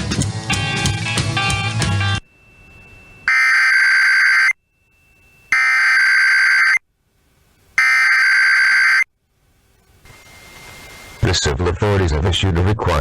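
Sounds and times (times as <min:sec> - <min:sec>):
digital data screech bursts: 0:10.1 - 0:11.4.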